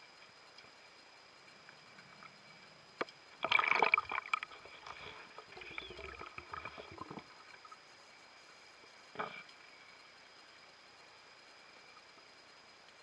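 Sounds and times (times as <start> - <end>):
soft bubbling and rustling: 0.3 - 13.0
underwater bubbles and gurgling: 1.6 - 10.2.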